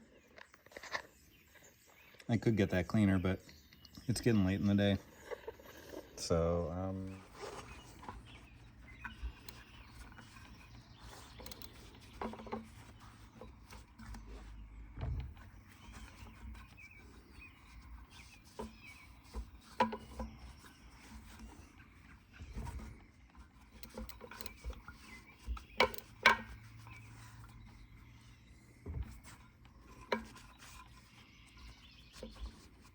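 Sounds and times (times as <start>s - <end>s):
bike parts clicking and knocking: 7.2s - 28.2s, 28.8s - 32.9s.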